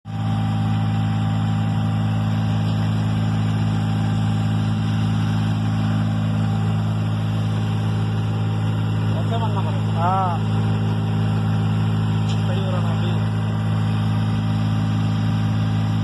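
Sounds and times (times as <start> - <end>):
engine running steadily: 0.0 - 16.0.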